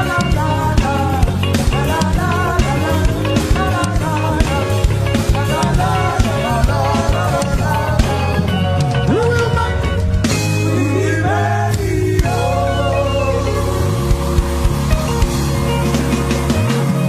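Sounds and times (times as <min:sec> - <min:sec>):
gospel band playing: 0:00.0 - 0:17.0
voices singing: 0:00.0 - 0:17.0
drum beat: 0:13.6 - 0:17.0.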